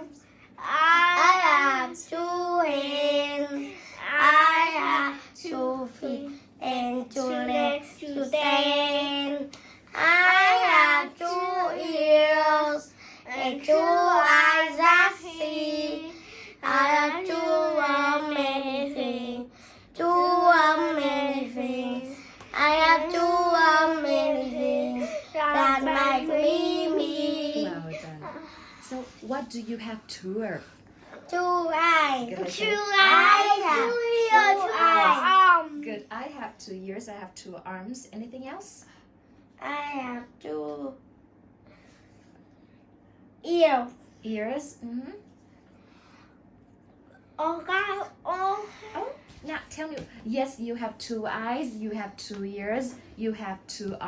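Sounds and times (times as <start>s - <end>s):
child singing: 0.6s - 28.0s, 32.4s - 35.6s.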